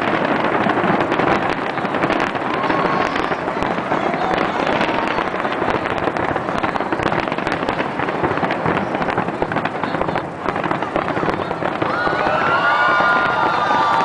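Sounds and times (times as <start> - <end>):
fireworks bursting and crackling: 0.0 - 14.0.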